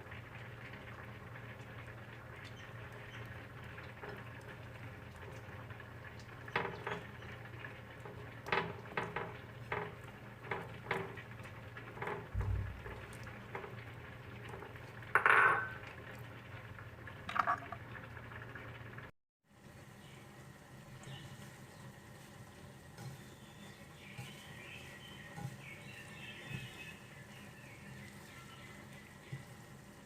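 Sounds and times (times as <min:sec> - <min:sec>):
steady low hum: 0:12.3 - 0:13.4
dull thud: 0:12.4 - 0:12.9
dishes knocking and clinking: 0:15.2 - 0:15.8.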